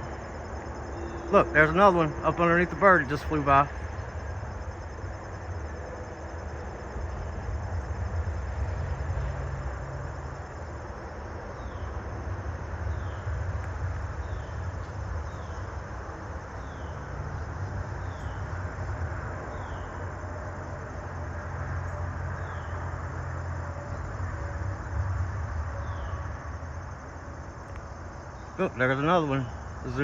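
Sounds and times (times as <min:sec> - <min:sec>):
low outdoor rumble: 0:00.0 - 0:30.0.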